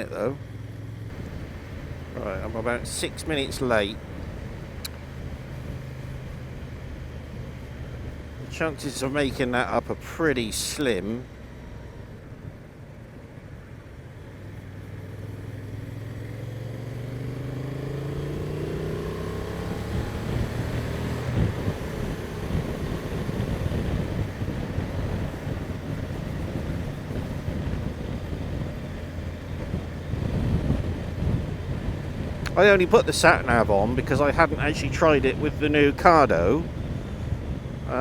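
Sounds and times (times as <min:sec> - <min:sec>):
motorcycle engine accelerating: 0:00.5 - 0:09.6, 0:14.4 - 0:38.0
wind buffeting on microphone: 0:01.1 - 0:09.4, 0:17.9 - 0:38.0.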